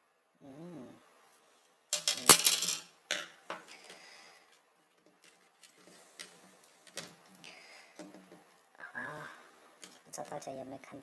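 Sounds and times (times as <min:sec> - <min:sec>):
keyboard parts clattering: 0:02.0 - 0:04.0.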